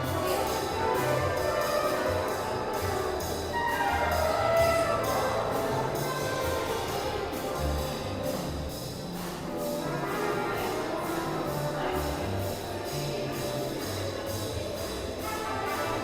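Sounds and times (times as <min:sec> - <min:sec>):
orchestral music with brass: 0:00.0 - 0:16.0.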